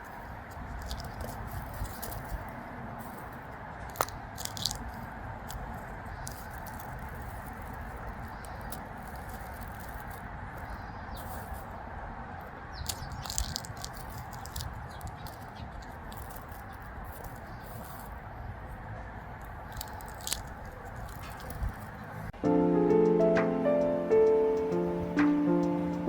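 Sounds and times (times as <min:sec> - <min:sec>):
crackling rustling clicks: 0:00.0 - 0:11.7, 0:12.4 - 0:18.2, 0:19.4 - 0:22.4
outdoor background hiss: 0:21.9 - 0:26.0.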